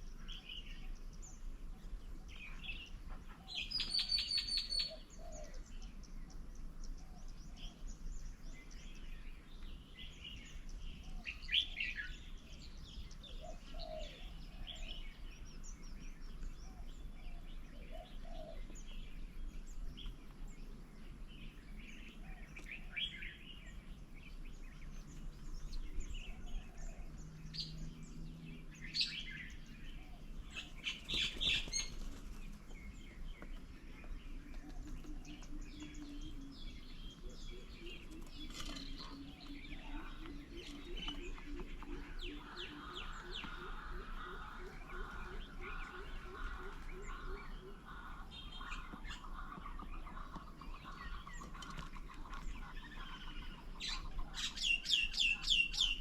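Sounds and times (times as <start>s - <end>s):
songbirds chirping: 0.0s - 56.0s.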